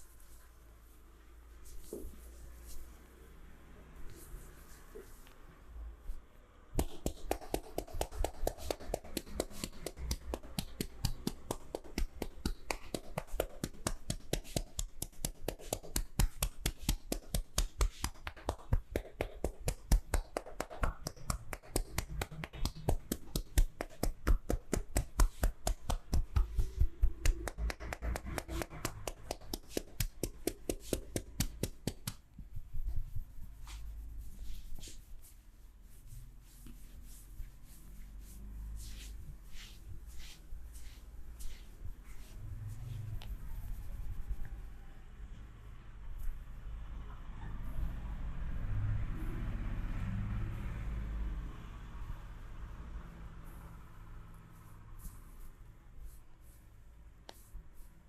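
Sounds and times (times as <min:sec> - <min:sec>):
soft handling sounds: 0:00.0 - 0:06.4, 0:22.5 - 0:44.6, 0:54.4 - 0:58.0
hands slapping body: 0:06.7 - 0:35.3.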